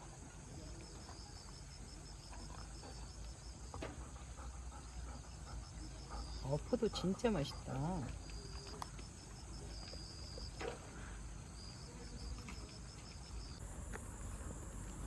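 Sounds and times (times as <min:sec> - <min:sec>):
insects trilling: 0:00.4 - 0:15.0
low steady rumble: 0:13.6 - 0:15.0.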